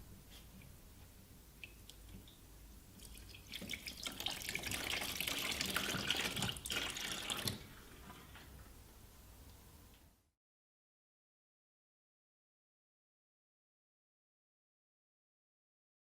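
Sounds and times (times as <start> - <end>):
tap water running into sink: 3.1 - 8.5.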